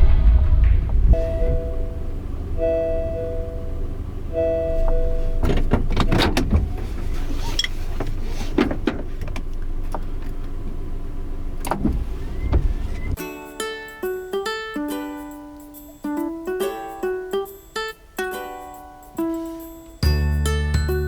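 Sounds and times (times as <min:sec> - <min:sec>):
vehicle rumble from inside: 0:00.0 - 0:13.2
piano-like music notes: 0:13.2 - 0:21.0.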